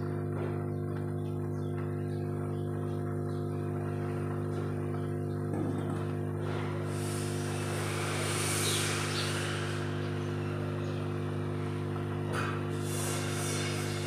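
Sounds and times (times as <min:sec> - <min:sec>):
electrical hum: 0:00.0 - 0:14.0
rushing hiss: 0:06.9 - 0:10.0, 0:12.8 - 0:14.0.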